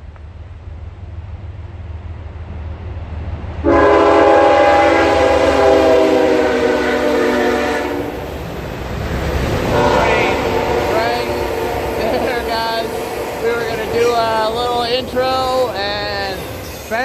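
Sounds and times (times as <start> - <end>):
low steady rumble: 0.0 - 3.6
long horn blast: 3.6 - 8.3, 9.7 - 14.4.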